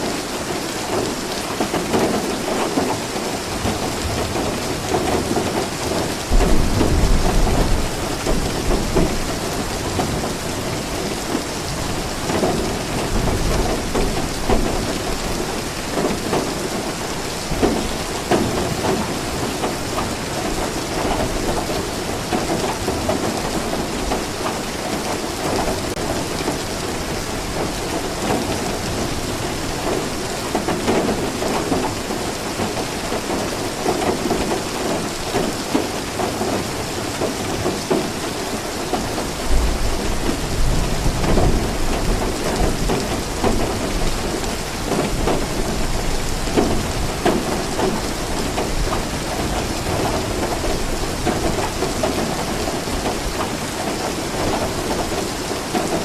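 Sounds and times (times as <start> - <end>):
heavy rain pattering: 0.0 - 56.0
thunder rumbling: 3.6 - 20.6.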